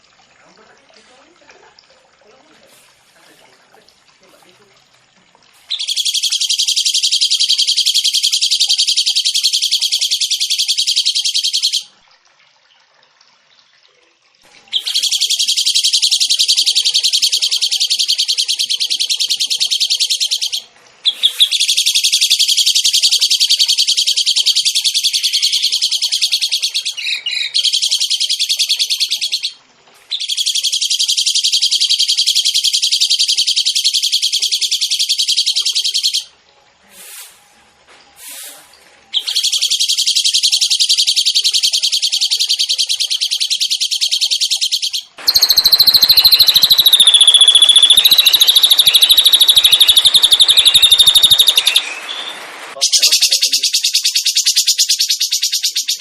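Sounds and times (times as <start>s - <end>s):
songbird rolling trills: 5.7s - 11.9s, 14.7s - 29.6s, 39.1s - 56.0s.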